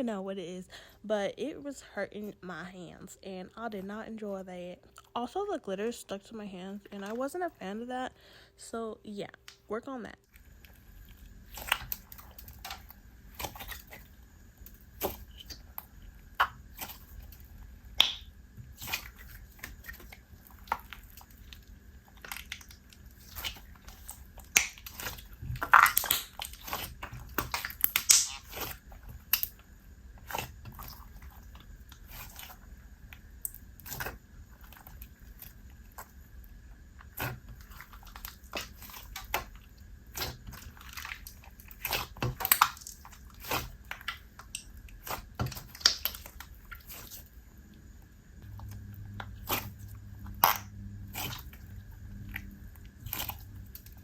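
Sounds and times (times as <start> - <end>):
slime clicks pops and crackles: 18.0 - 20.1, 22.2 - 29.6, 41.2 - 47.0.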